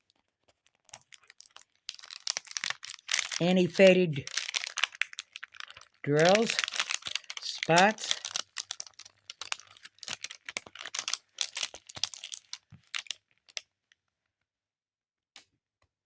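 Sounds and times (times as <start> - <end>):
canvas crinkling and clicking: 4.2 - 13.6.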